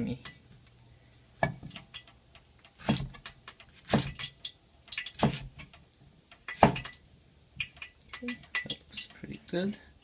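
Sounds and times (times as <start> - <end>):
knife chopping on cutting board: 2.8 - 3.2, 3.8 - 4.3, 5.2 - 5.5, 6.5 - 6.9.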